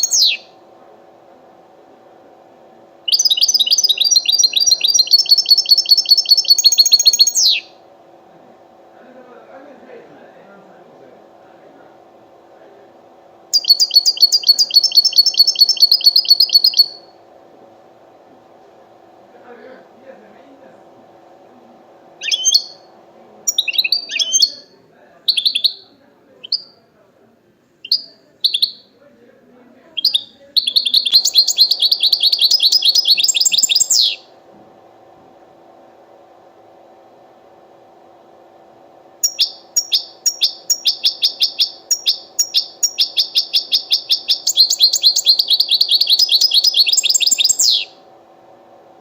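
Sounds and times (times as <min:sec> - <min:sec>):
finch chirping calls: 0:00.0 - 0:00.5, 0:03.1 - 0:07.7, 0:13.5 - 0:17.1, 0:22.2 - 0:22.8, 0:23.5 - 0:24.7, 0:25.3 - 0:25.8, 0:27.8 - 0:28.9, 0:30.0 - 0:34.2, 0:39.2 - 0:48.0
goldfinch singing: 0:00.0 - 0:00.5, 0:03.1 - 0:07.7, 0:13.5 - 0:17.1, 0:22.2 - 0:22.8, 0:23.5 - 0:24.7, 0:25.3 - 0:25.8, 0:30.0 - 0:34.2, 0:39.2 - 0:48.0.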